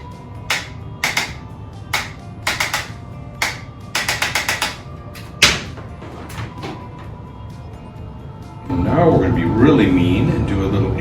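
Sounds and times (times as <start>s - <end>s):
adjuster tool clicking: 0.0s - 5.7s
background music: 0.0s - 11.0s.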